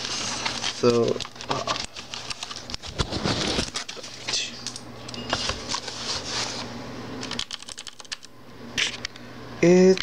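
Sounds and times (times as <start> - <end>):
packaging rustling: 0.0 - 4.3
keyboard clicks and knocks: 7.2 - 8.3.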